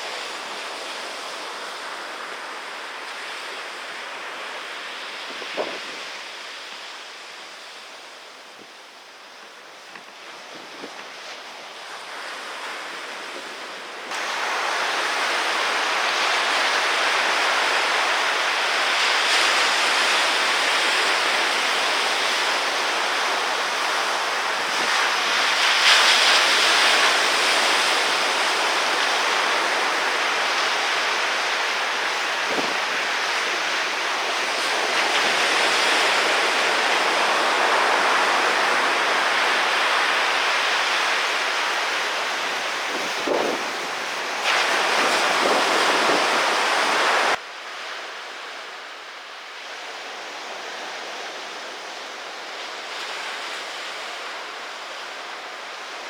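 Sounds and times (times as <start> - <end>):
ocean surf: 0.0 - 56.0
wind buffeting microphone: 5.3 - 6.1, 9.9 - 11.2, 32.3 - 33.5, 41.9 - 47.4.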